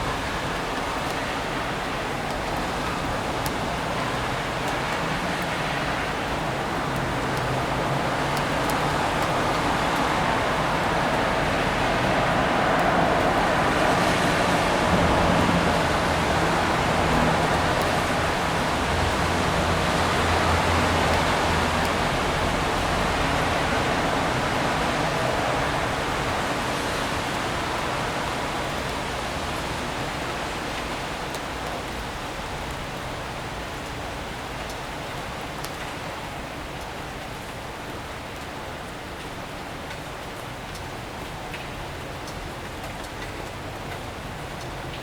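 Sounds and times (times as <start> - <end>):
rain hiss: 0.0 - 40.2
wet street noise: 0.0 - 45.0
low traffic rumble: 2.5 - 30.8.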